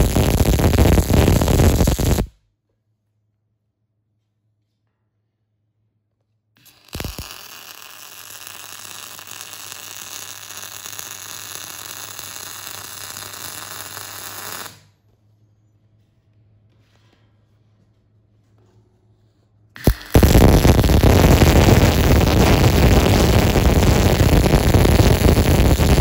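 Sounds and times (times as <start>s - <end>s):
welding arc crackling hiss: 0.0s - 2.3s, 6.6s - 15.0s, 19.8s - 26.0s.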